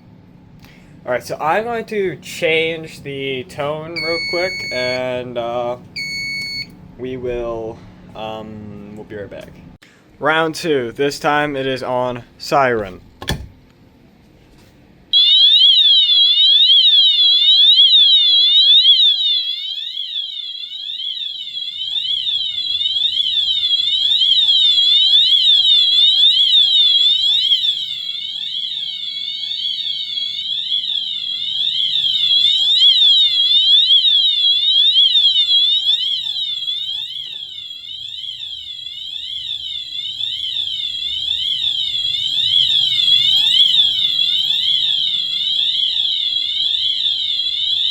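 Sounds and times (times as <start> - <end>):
fire alarm siren sweeping: 3.5 - 6.8, 15.1 - 47.9.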